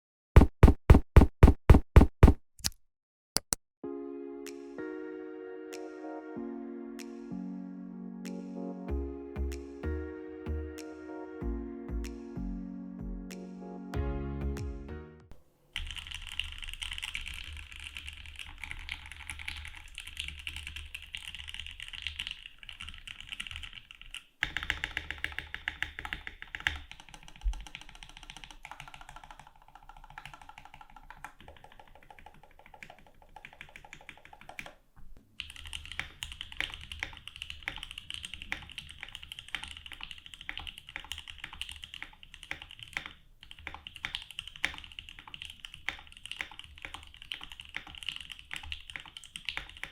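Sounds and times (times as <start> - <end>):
mechanical keyboard typing: 15.8 - 34.8, 35.4 - 49.9.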